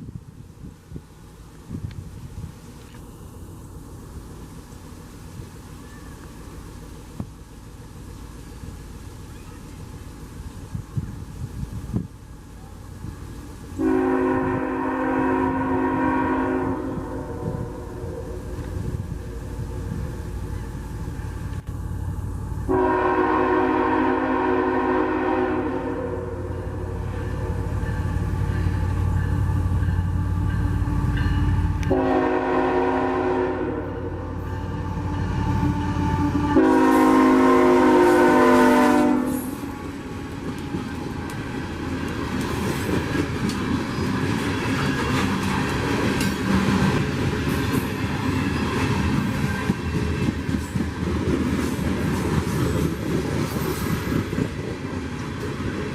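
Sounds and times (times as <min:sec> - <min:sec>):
train cars rolling with wheel clatter: 0:00.0 - 0:24.8, 0:26.0 - 0:33.1, 0:33.8 - 0:55.9
locomotive engine rumble: 0:00.0 - 0:55.9
locomotive air horn blasts: 0:13.8 - 0:18.4, 0:22.7 - 0:26.6, 0:30.8 - 0:40.0.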